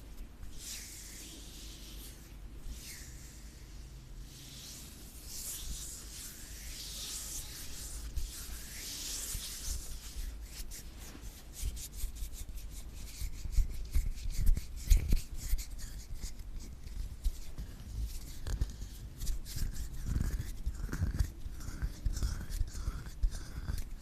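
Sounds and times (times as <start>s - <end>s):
crackly scratching and rubbing: 0.0s - 24.0s.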